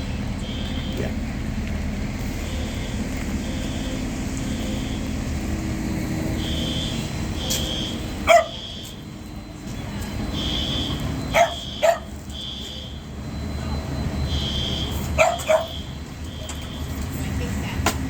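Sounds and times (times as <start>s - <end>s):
dog barking: 8.2s - 8.6s, 11.3s - 12.1s, 15.2s - 15.8s.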